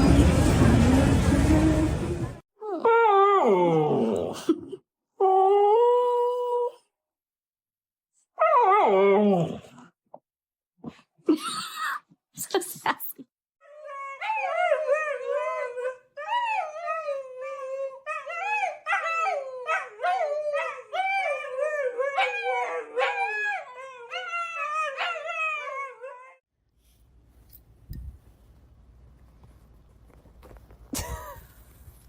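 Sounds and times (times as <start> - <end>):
dog howling and whining: 8.4 - 9.7, 13.6 - 26.4.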